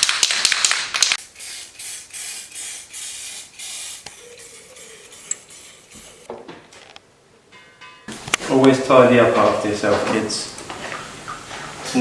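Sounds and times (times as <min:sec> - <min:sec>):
aerosol can spraying bursts: 0:01.0 - 0:06.3.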